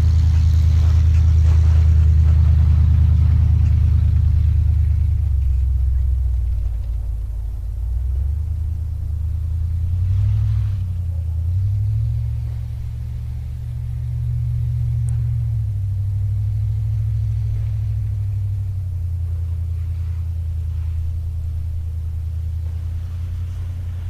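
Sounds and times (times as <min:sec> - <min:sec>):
car engine running at low revs: 0:00.0 - 0:24.0.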